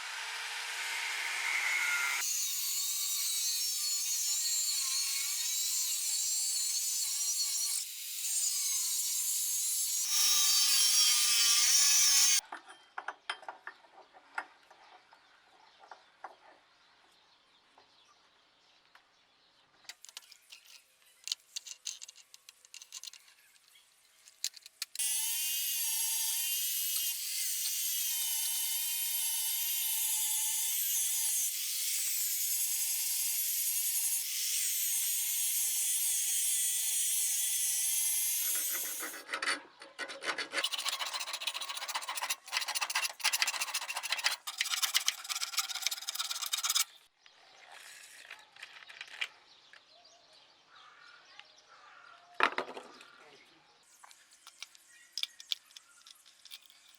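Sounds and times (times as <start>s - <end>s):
power grinder on steel: 0.0s - 12.4s, 25.0s - 39.3s, 40.6s - 47.0s
faint scraping and clicking: 19.9s - 25.0s, 54.0s - 56.9s.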